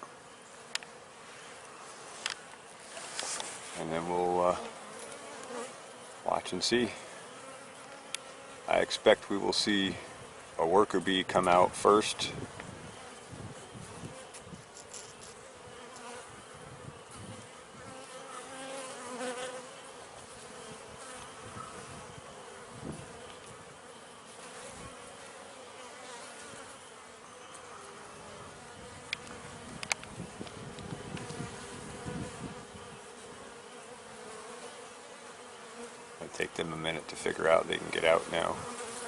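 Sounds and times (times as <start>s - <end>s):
honeybees buzzing: 0.0s - 39.0s.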